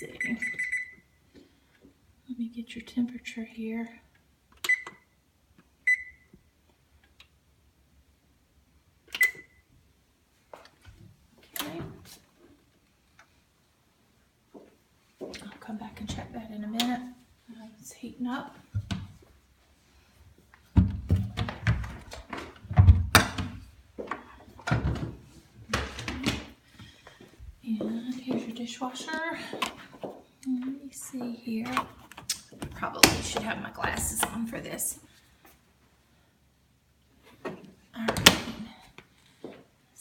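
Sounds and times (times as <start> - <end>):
oven control panel beeps: 0.1 - 1.0, 5.9 - 6.3
thumps and knocks: 20.7 - 26.5.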